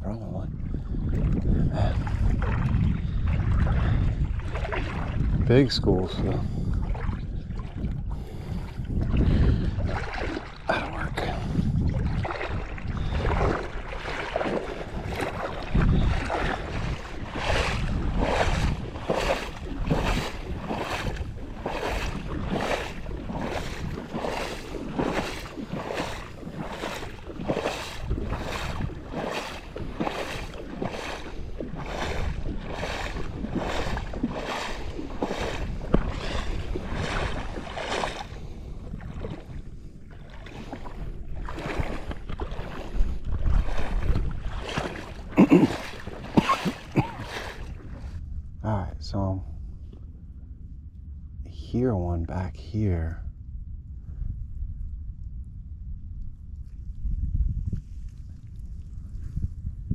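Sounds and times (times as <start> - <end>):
wind on microphone: 0.0 - 59.9
sloshing steps in water: 1.1 - 5.5, 6.2 - 48.2.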